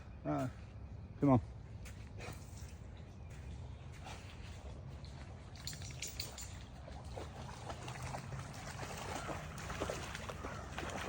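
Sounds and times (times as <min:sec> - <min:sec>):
water sloshing and trickling: 0:02.2 - 0:11.0
small water splashes: 0:05.1 - 0:11.0.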